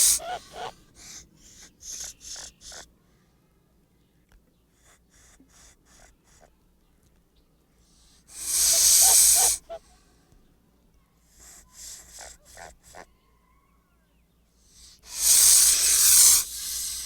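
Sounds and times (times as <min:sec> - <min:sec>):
goose hissing: 0:00.0 - 0:02.9, 0:04.8 - 0:06.5, 0:07.9 - 0:10.0, 0:11.3 - 0:13.1, 0:14.7 - 0:17.0.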